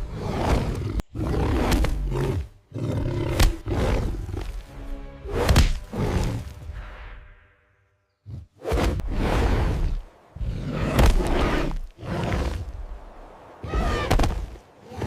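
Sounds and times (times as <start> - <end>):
big cat roaring: 0.0 - 4.5, 8.3 - 12.8, 13.6 - 15.0
dramatic music: 4.5 - 7.8.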